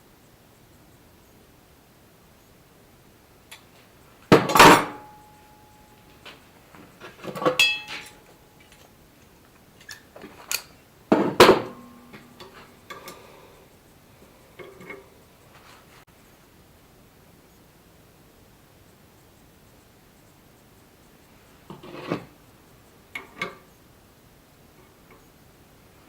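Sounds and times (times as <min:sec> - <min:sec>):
steel pieces clanking: 0:07.0 - 0:08.9.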